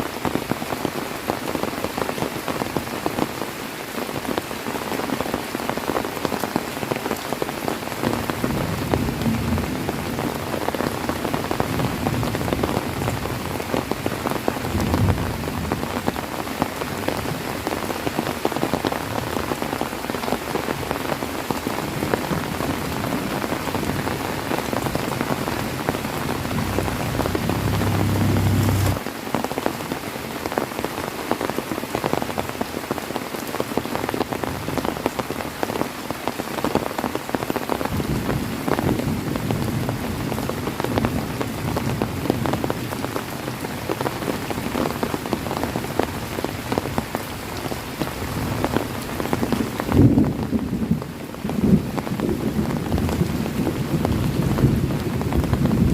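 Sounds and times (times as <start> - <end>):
heavy rain falling: 0.0 - 55.9
low rumble: 25.3 - 29.0.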